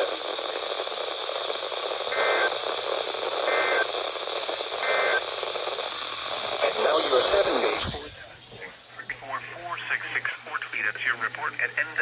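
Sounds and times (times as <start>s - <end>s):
short data bursts: 0.0s - 7.9s
radio static hiss: 0.0s - 12.0s.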